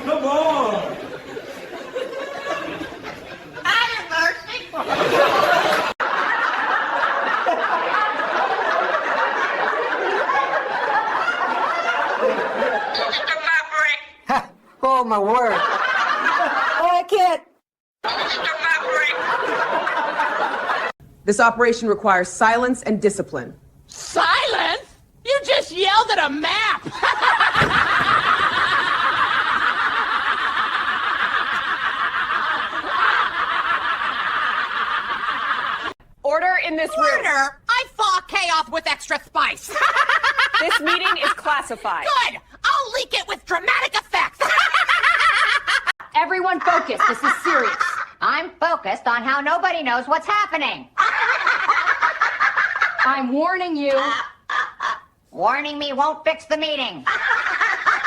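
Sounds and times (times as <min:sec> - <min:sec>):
group of people laughing: 0:00.0 - 0:03.7, 0:04.7 - 0:13.5, 0:15.5 - 0:17.0, 0:18.0 - 0:20.9, 0:26.8 - 0:36.0, 0:39.7 - 0:41.8, 0:44.4 - 0:48.2, 0:51.0 - 0:53.2, 0:57.1 - 0:58.0.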